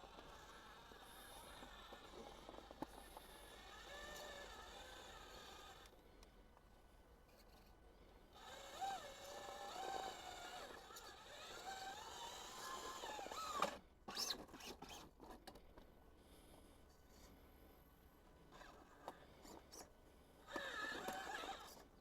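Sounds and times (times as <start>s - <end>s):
electric motor whining: 0.0s - 5.9s, 8.4s - 13.8s, 20.5s - 21.8s.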